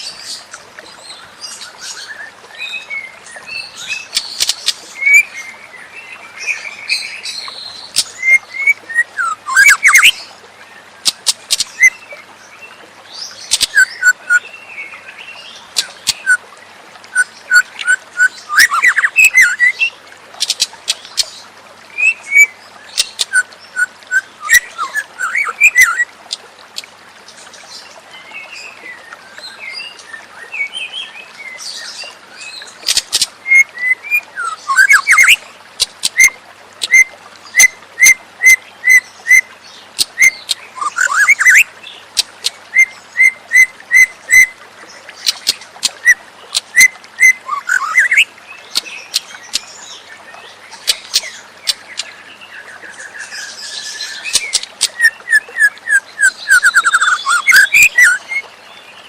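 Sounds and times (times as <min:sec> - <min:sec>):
songbird whistling and clicking: 0:04.1 - 0:05.3, 0:07.9 - 0:10.2, 0:11.0 - 0:11.9, 0:13.5 - 0:14.4, 0:15.7 - 0:16.4, 0:17.1 - 0:19.8, 0:20.4 - 0:21.3, 0:22.0 - 0:26.9, 0:32.8 - 0:39.4, 0:40.0 - 0:44.5, 0:45.2 - 0:49.7, 0:50.8 - 0:52.2, 0:54.0 - 0:58.4.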